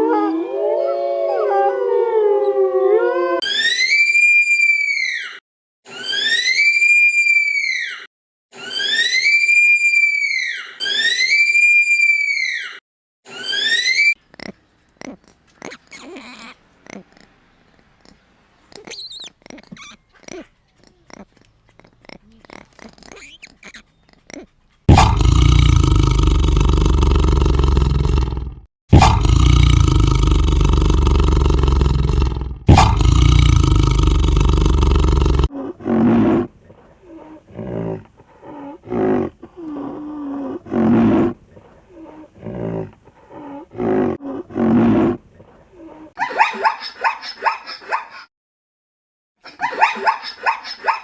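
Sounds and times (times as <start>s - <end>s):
large animal calling: 10.8s - 17.4s, 18.0s - 28.3s.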